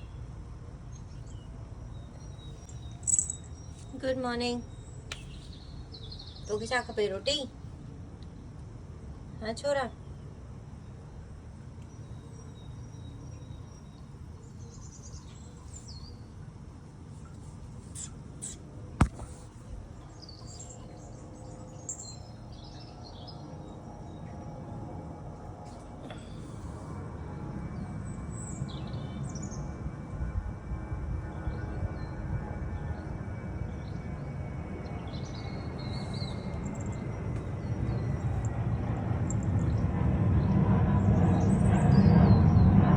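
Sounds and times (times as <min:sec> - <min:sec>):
low background hum: 0:00.0 - 0:42.9
high bird chirps: 0:02.2 - 0:03.9, 0:21.8 - 0:22.4.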